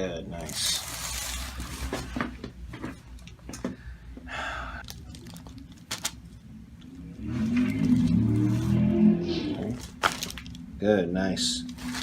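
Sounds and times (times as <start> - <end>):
breathy exhale: 3.8 - 4.8
rustling: 11.7 - 12.0.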